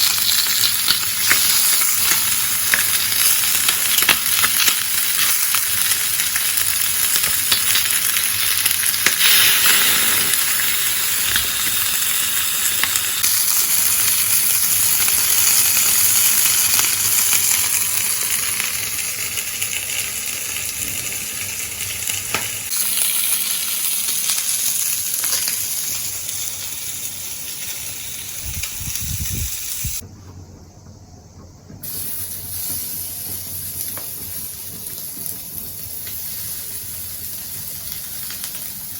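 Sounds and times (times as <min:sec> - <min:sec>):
food sizzling in a pan: 0:00.0 - 0:30.0, 0:31.8 - 0:38.9.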